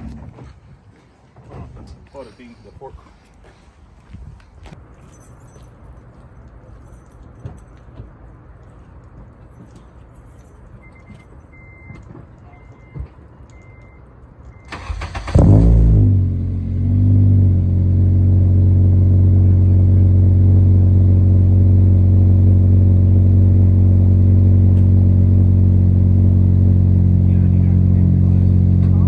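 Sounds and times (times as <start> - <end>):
car engine starting: 14.6 - 29.0
car engine idling: 14.8 - 29.0.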